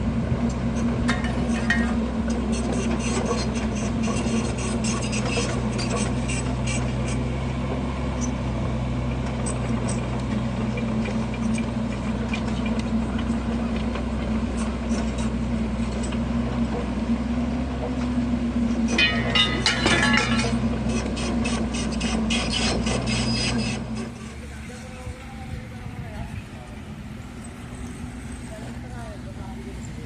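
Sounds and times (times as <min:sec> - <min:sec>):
diesel engine running: 0:00.0 - 0:30.0
scraping clatter: 0:18.8 - 0:25.5.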